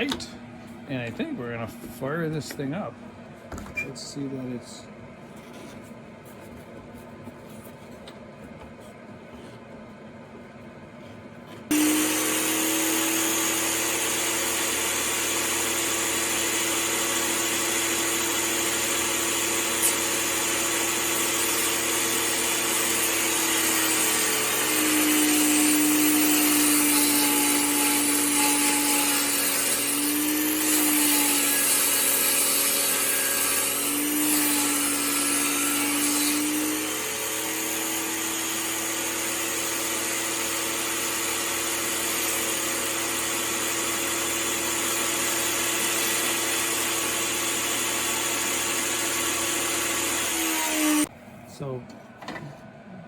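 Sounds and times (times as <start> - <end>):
saw ripping a board: 11.7 - 51.1
table saw humming: 11.7 - 51.1.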